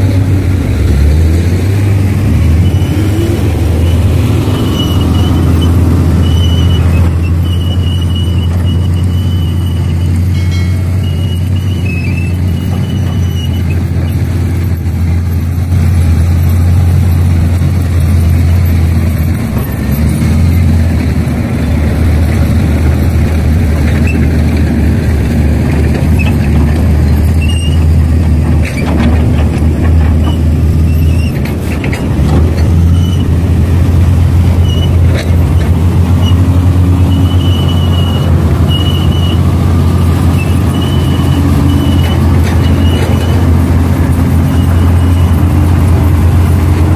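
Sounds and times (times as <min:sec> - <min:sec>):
diesel machinery drone: 0:00.0 - 0:46.9
short high squeals: 0:02.4 - 0:14.8, 0:26.1 - 0:28.0, 0:30.2 - 0:31.5, 0:32.8 - 0:33.4, 0:34.5 - 0:39.5, 0:40.2 - 0:46.5
knocking and clatter: 0:22.2 - 0:33.1.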